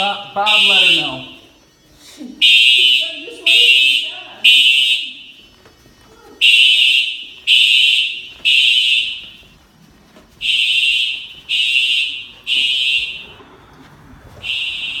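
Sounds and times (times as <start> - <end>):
fire alarm horn blasts: 0.0 - 1.6, 2.4 - 5.6, 6.4 - 9.6, 10.4 - 13.4, 14.4 - 15.0.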